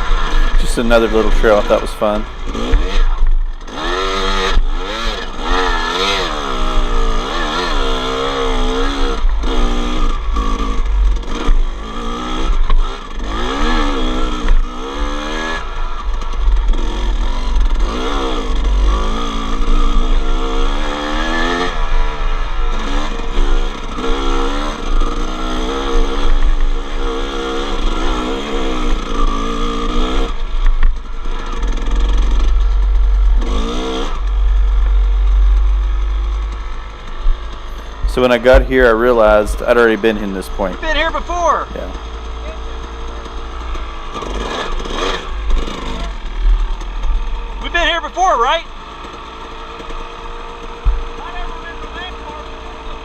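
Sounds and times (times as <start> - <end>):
constant low rumble: 0.0 - 7.2, 30.2 - 53.0
dirt bike engine revving: 0.0 - 53.0.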